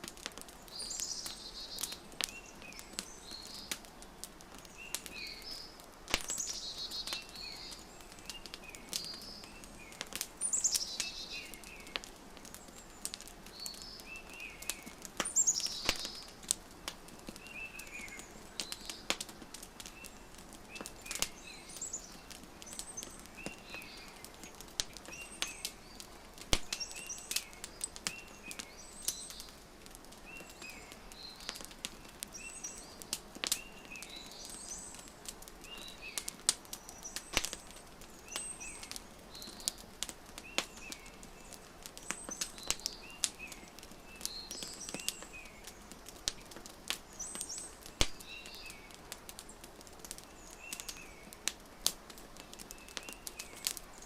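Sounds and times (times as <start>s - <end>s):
wood fire crackling and popping: 0.0s - 54.0s
small bird chirping: 4.6s - 16.4s, 19.9s - 29.6s, 32.3s - 39.8s, 40.4s - 46.4s.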